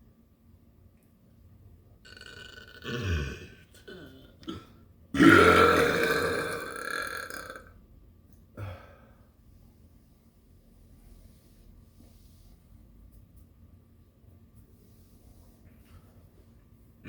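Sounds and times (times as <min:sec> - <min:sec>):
person burping: 0:02.1 - 0:07.7.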